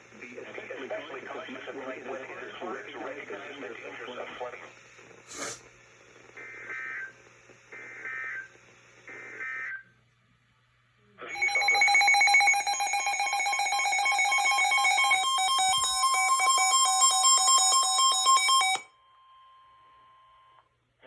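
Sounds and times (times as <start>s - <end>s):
digital data bursts: 11.3s - 18.0s
rapidly pulsing alarm tone: 11.3s - 18.9s.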